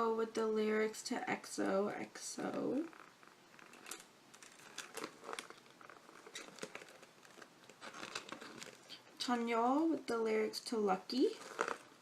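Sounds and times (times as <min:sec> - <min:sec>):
paper pages rustling: 0:03.0 - 0:08.9.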